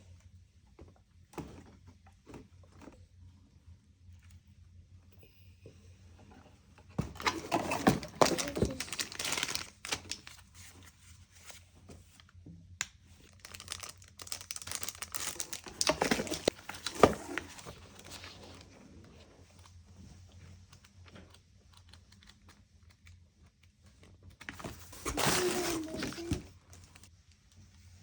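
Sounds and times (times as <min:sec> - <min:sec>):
packaging crinkling and rustling: 0:07.0 - 0:11.6, 0:13.2 - 0:19.8, 0:24.1 - 0:27.1.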